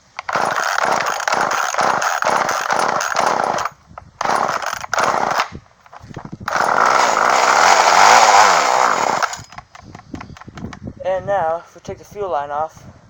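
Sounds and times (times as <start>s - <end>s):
chainsaw recoil starter pulls: 0.0s - 10.7s.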